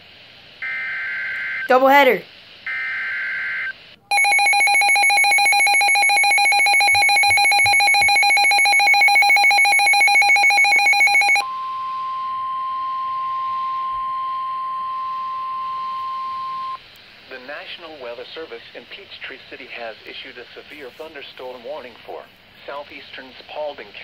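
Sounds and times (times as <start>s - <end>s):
rapidly pulsing electronic alarm: 0.6s - 1.7s, 2.7s - 11.5s
steady single-pitch tone: 2.7s - 16.8s.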